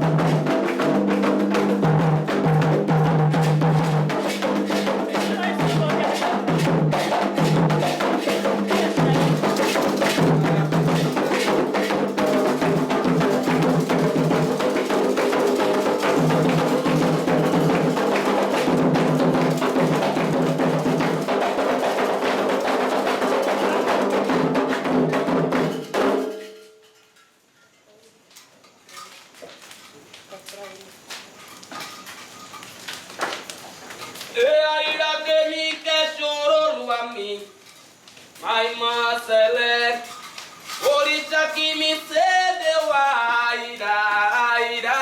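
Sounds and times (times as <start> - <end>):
hand drums: 0.0 - 26.7.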